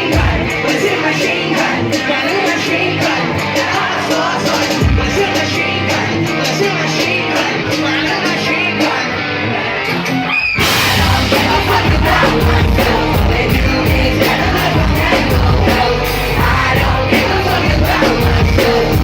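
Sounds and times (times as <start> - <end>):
person singing: 0.0 - 10.0, 10.6 - 19.0
rock band playing: 0.0 - 19.0.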